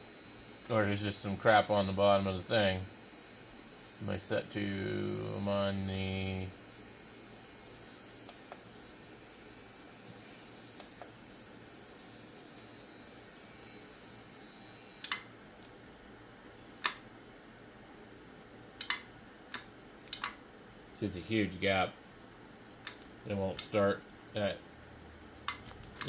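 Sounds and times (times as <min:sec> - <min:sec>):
tattoo machine electrical hiss: 0:00.0 - 0:15.3
sharp click: 0:15.0 - 0:15.3, 0:18.8 - 0:20.4.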